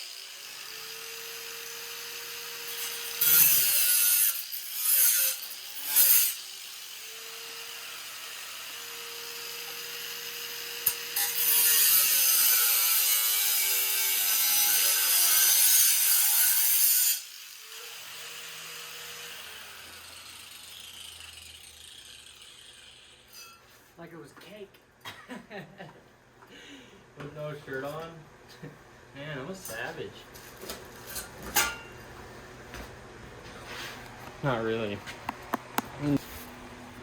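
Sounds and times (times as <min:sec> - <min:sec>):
power cutting tool slicing metal tubing: 0:00.0 - 0:23.6.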